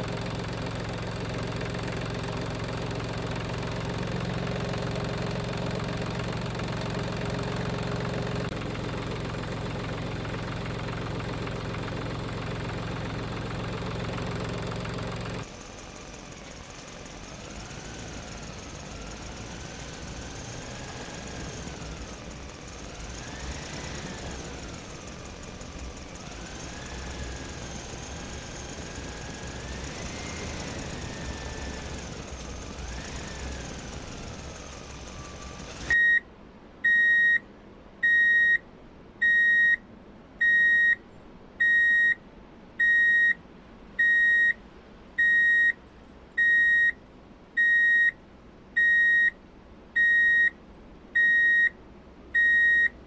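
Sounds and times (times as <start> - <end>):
truck engine whining: 0.0 - 36.0
reversing alarm beeping: 39.2 - 39.8, 40.4 - 41.0, 41.6 - 42.2, 42.8 - 43.4, 44.0 - 44.6, 45.2 - 45.8, 46.4 - 47.0, 47.6 - 48.2, 48.8 - 49.3, 50.0 - 50.5, 51.2 - 51.7, 52.4 - 52.9.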